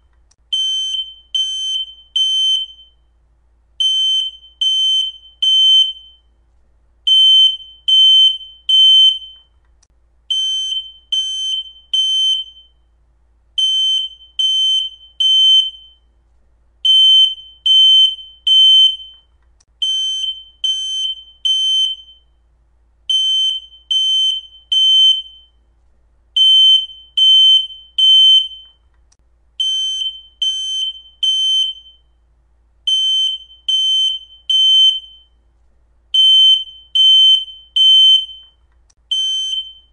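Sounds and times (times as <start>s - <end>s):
smoke alarm beeping: 0.5s - 3.1s, 3.8s - 6.4s, 7.1s - 9.6s, 10.3s - 12.9s, 13.6s - 16.1s, 16.8s - 22.4s, 23.1s - 25.6s, 26.4s - 28.9s, 29.6s - 32.2s, 32.9s - 35.4s, 36.1s - 39.9s.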